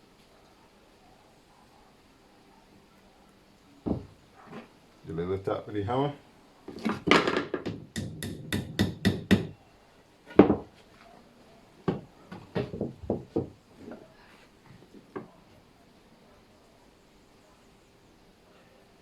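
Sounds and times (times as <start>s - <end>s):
hammer tapping wood: 3.9s - 4.2s, 6.7s - 9.6s, 11.9s - 13.6s.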